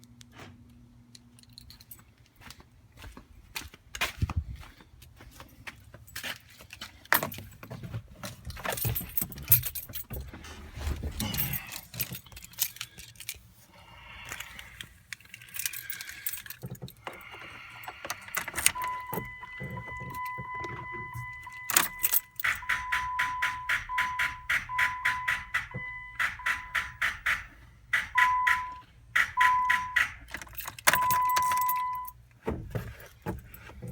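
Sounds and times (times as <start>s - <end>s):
keys jangling: 1.4s - 2.1s, 8.5s - 10.3s, 11.1s - 13.5s, 14.3s - 27.5s, 28.1s - 32.2s
sharp clicks and knocks: 18.0s - 33.9s
car warning chime: 18.6s - 32.2s.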